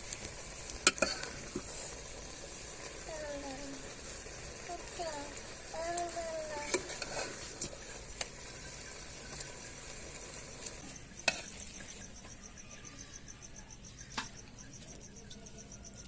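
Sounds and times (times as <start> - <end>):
food sizzling in a pot: 0.0 - 16.0
cricket chirping: 7.7 - 16.0.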